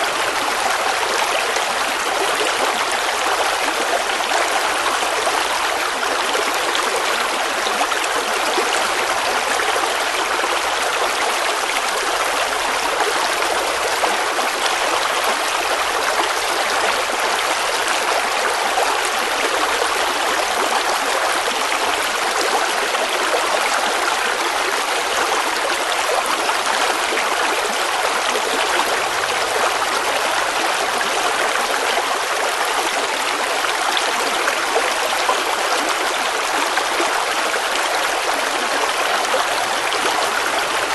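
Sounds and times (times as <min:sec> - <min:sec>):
river water babbling over rocks: 0:00.0 - 0:40.9.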